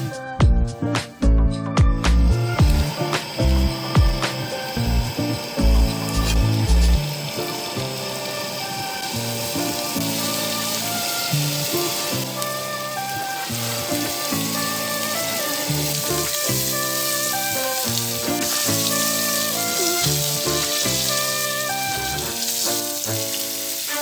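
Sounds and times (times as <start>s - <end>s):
background music held notes: 0.0s - 24.0s
food sizzling in a pan: 2.3s - 24.0s.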